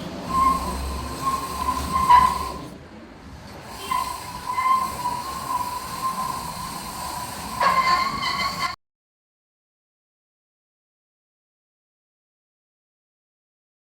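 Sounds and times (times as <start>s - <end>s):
hiss: 0.0s - 2.8s, 3.6s - 8.8s.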